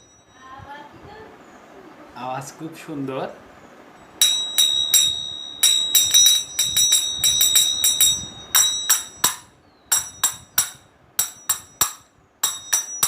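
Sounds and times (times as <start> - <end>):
small hand cymbals clashing: 4.2 - 13.0.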